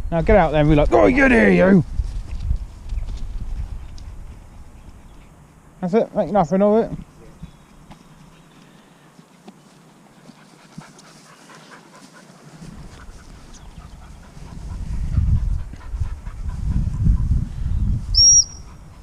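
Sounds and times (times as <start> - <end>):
dog panting: 10.0 - 17.5, 18.6 - 19.0
high whistle blast: 18.2 - 18.6.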